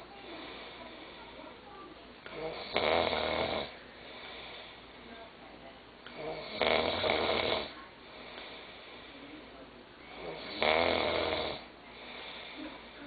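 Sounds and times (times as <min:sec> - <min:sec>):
boy snoring: 0:02.3 - 0:03.8, 0:06.2 - 0:07.8, 0:10.2 - 0:12.4.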